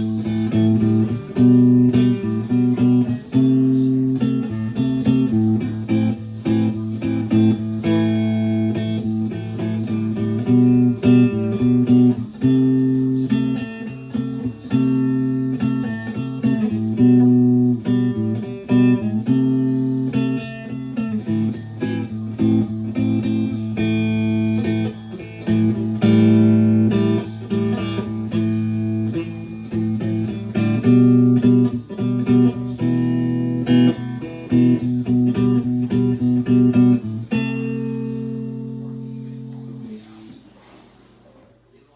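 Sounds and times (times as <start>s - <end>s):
electric guitar chords: 0.0s - 40.0s.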